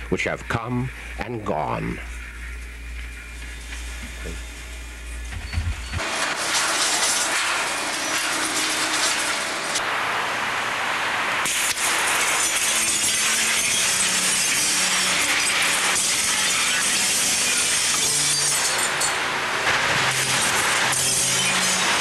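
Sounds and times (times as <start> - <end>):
debris and glass crunching: 5.5 - 9.8, 11.5 - 22.0.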